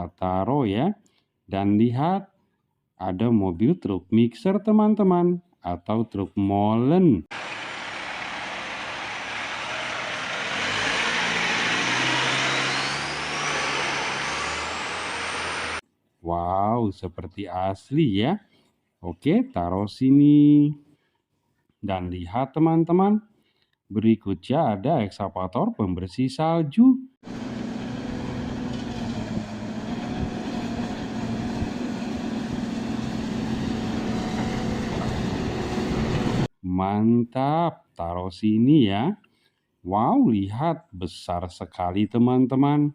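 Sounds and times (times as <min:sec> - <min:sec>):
heavy truck engine revving: 0:07.3 - 0:15.8, 0:27.2 - 0:36.5
machine humming: 0:07.3 - 0:15.8, 0:27.3 - 0:36.5
rising whine: 0:07.3 - 0:15.8, 0:27.3 - 0:36.5.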